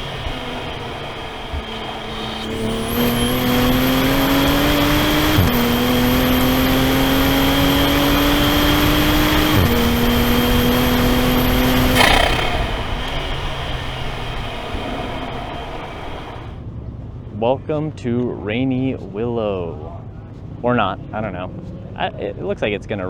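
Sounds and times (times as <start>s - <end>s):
car engine accelerating hard: 0.0s - 16.6s.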